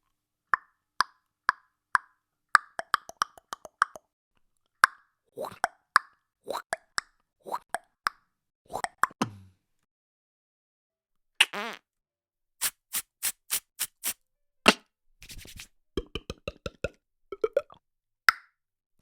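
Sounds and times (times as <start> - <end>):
quick cartoon pops: 12.6 - 16.2.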